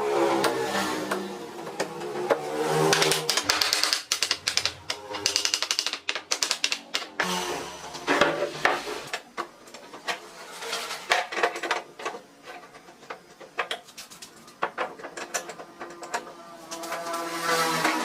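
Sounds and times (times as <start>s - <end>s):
mechanical clicks and rattling: 2.9s - 7.3s.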